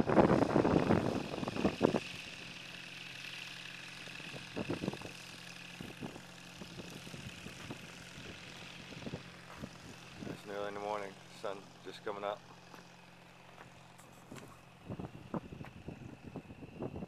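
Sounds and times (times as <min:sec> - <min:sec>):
wind buffeting microphone: 0:00.0 - 0:02.4, 0:04.2 - 0:05.2, 0:14.2 - 0:17.0
distant light aircraft engine: 0:00.0 - 0:17.0.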